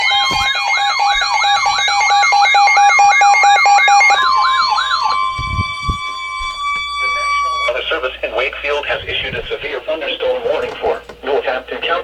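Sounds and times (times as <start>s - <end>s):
electronic alert siren sweeping: 0.0s - 8.0s
steady alarm tone: 0.0s - 11.8s.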